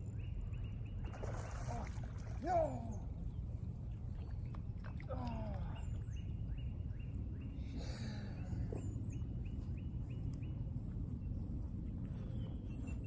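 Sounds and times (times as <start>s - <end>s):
wind rumble on microphone: 0.0s - 13.0s.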